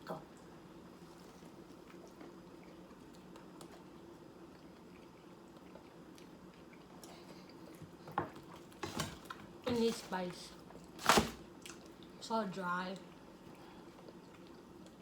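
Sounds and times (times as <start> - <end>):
low steady hum: 0.0 - 15.0
chewing food: 0.4 - 8.8, 12.9 - 15.0.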